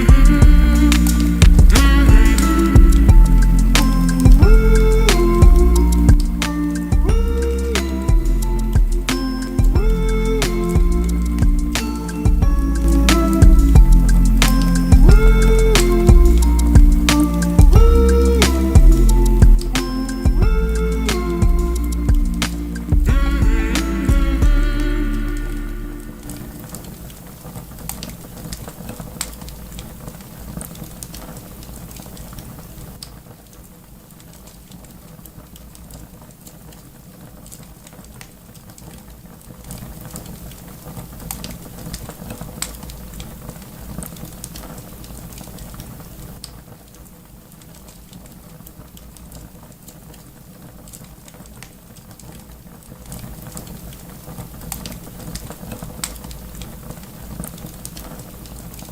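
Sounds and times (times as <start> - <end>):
low steady rumble: 0.0 - 26.7
wood fire crackling: 0.0 - 58.9.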